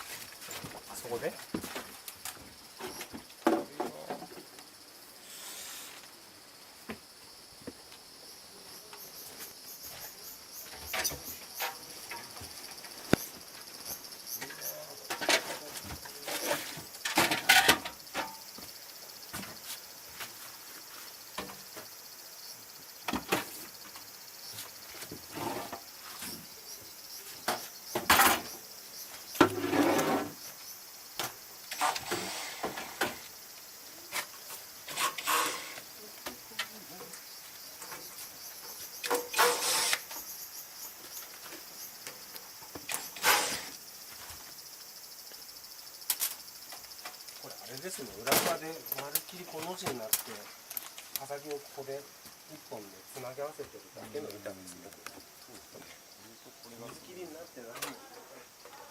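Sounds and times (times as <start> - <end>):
steady high hiss: 0.0 - 58.7
knocks and scrapes on wood: 34.9 - 35.8.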